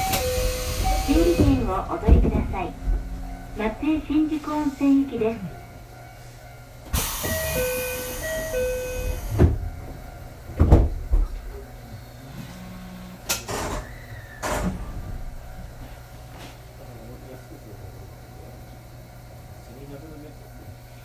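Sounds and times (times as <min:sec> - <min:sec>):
air hissing: 0:00.0 - 0:01.6, 0:06.9 - 0:09.4
two-tone door chime: 0:00.0 - 0:01.8, 0:06.9 - 0:09.9
railcar low hum: 0:00.0 - 0:21.0
heavy door thuds: 0:00.8 - 0:04.3, 0:09.3 - 0:11.3.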